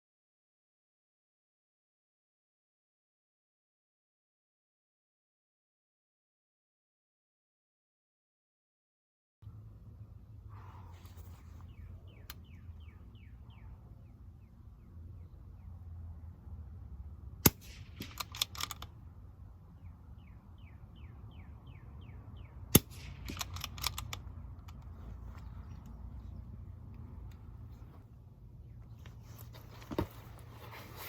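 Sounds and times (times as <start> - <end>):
rifle shots: 17.4 - 18.9, 22.7 - 24.1
rifle bolt metallic clicks: 17.4 - 19.0, 22.7 - 24.9.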